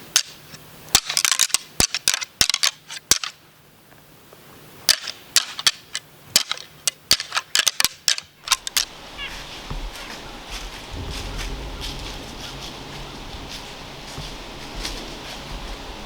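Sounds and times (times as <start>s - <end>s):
antlers clacking together: 4.9s - 9.3s.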